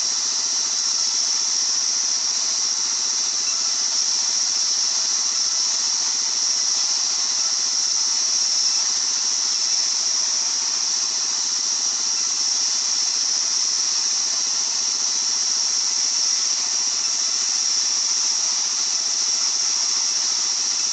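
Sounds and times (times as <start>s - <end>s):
circular saw hissing: 0.0s - 20.9s.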